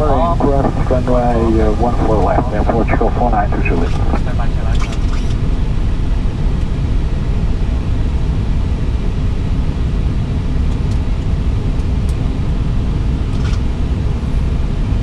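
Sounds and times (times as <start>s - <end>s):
aircraft engines idling: 0.0s - 6.9s.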